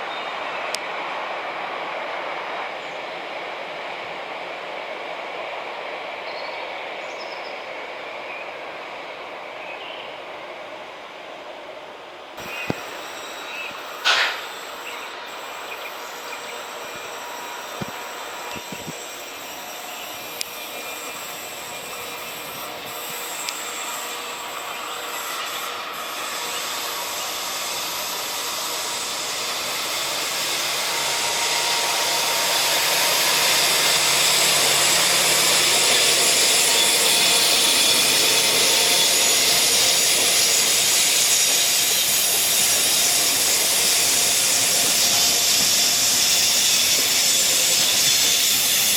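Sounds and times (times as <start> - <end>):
train wheels rumbling on rails: 10.2 - 48.9.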